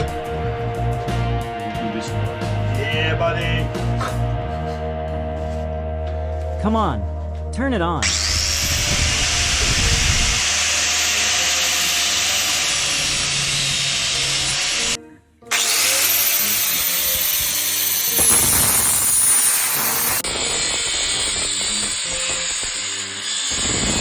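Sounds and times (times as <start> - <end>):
angle grinder cutting metal: 8.0 - 24.0.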